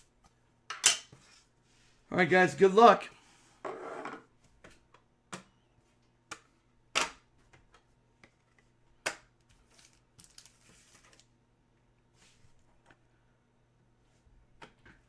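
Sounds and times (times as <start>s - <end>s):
packaging rustle: 9.6s - 11.3s.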